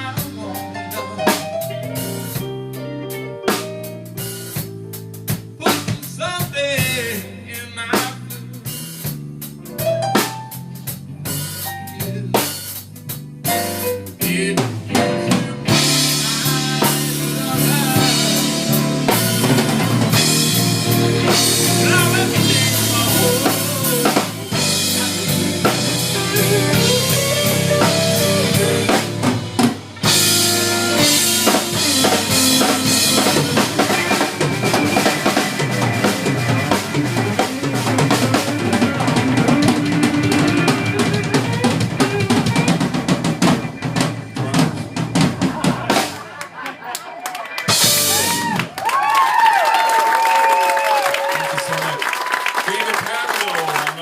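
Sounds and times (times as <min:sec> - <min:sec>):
band music: 0:00.0 - 0:54.0
bass drum and snare: 0:03.5 - 0:07.3, 0:07.9 - 0:46.3, 0:47.7 - 0:48.7.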